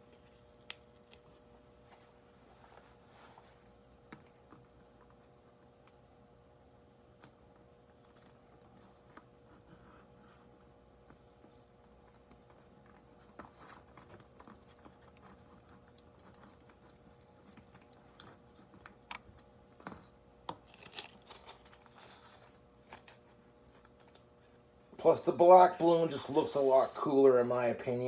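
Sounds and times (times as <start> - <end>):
faint steady hum: 0.0 - 28.0
hands handling tape and balloon: 8.1 - 24.3.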